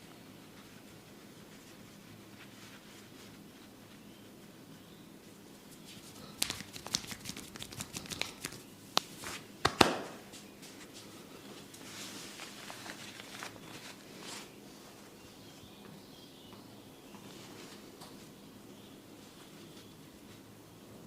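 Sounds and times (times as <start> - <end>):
hands rubbing and rustling: 0.0 - 15.2
small crackling clicks: 6.4 - 9.1.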